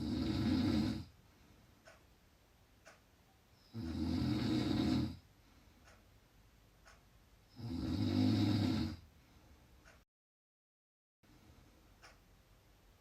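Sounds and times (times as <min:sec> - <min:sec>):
person snoring loudly: 0:00.0 - 0:01.1, 0:03.7 - 0:05.2, 0:07.6 - 0:09.0.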